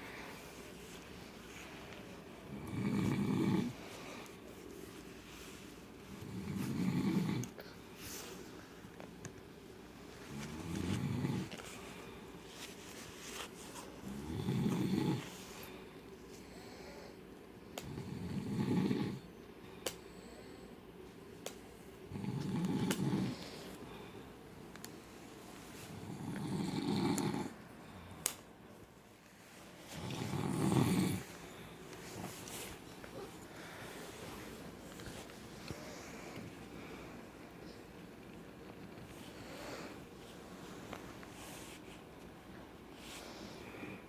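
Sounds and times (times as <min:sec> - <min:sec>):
quiet breathing: 0:00.0 - 0:44.0
man snoring: 0:02.5 - 0:03.8, 0:26.0 - 0:27.5, 0:30.0 - 0:31.2.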